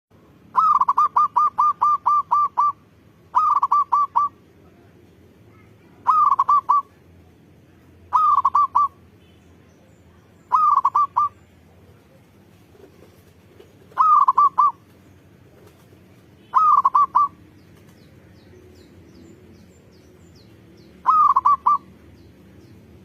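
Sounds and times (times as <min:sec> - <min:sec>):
dove cooing: 0:00.5 - 0:04.4, 0:06.0 - 0:06.9, 0:08.1 - 0:09.0, 0:10.5 - 0:11.4, 0:12.8 - 0:14.9, 0:16.5 - 0:17.4, 0:21.0 - 0:21.9.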